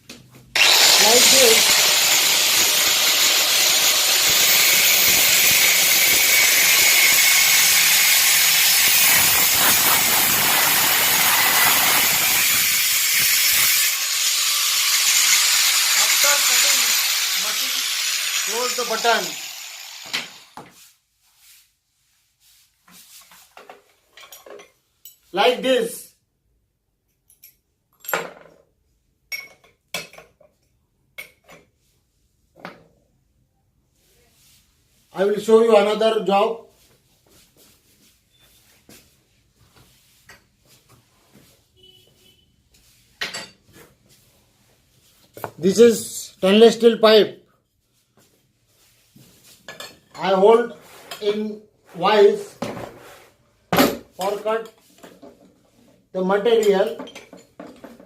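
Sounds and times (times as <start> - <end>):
angle grinder cutting steel pipe: 0.6 - 20.6.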